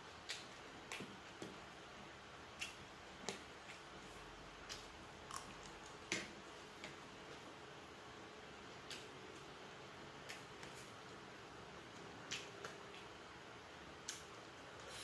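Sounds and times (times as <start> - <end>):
person chewing crunchy food: 4.0 - 6.1.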